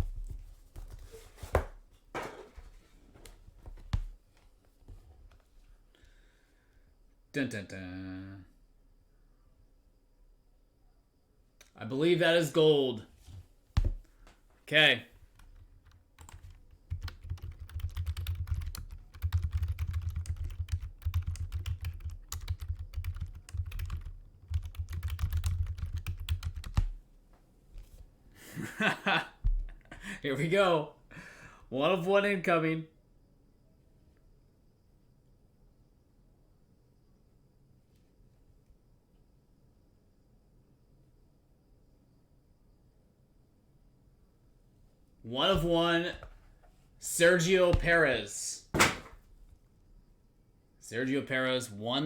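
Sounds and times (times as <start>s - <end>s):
dull thumps on desk: 13.8s - 14.1s, 47.8s - 48.0s, 48.8s - 49.2s
rapid clicking and tapping: 15.4s - 27.0s
sharp knocks on box: 48.8s - 49.2s.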